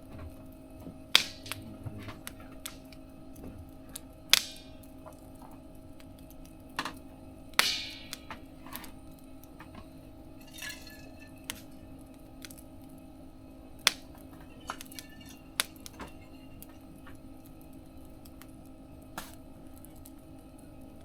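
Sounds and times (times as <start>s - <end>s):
steady low hum: 0.0s - 21.0s
wood fire crackling: 0.0s - 21.0s
loud sharp pops: 1.2s - 2.9s.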